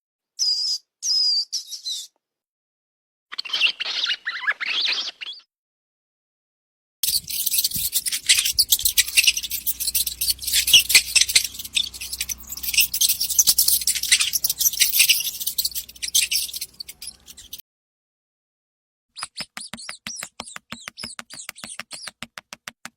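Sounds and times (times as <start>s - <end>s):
mice squeaking: 7.0s - 17.6s, 19.2s - 22.2s
faint low hum: 7.1s - 17.6s.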